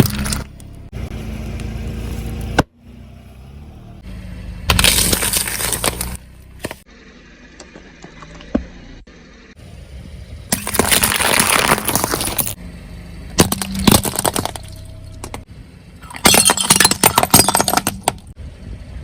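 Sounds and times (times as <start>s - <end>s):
brittle objects crushed under tyre: 0.0s - 0.6s, 4.7s - 6.8s, 10.5s - 12.6s, 13.4s - 15.4s, 16.0s - 18.3s.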